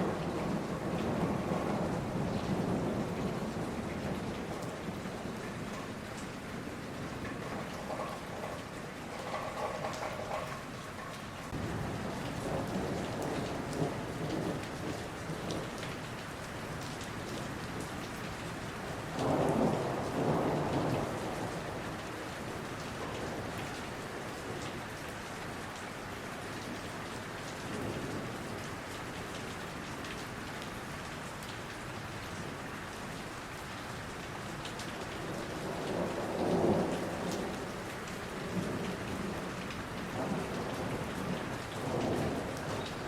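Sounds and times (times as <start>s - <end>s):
low thunder rumble: 0.0s - 15.7s, 35.2s - 43.0s
rain on foliage: 0.0s - 43.0s.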